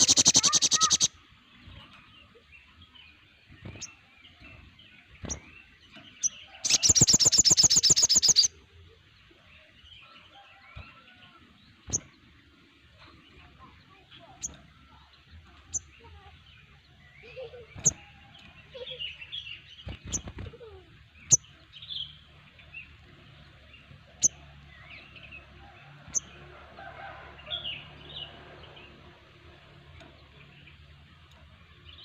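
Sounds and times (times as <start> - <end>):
bird trill of sharp high notes: 0.0 - 1.2, 6.2 - 8.5
faint bird twittering: 0.0 - 8.7.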